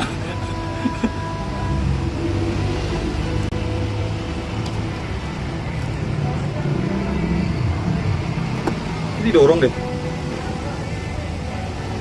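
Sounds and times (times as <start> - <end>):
music with held tones and bass: 0.0 - 12.0.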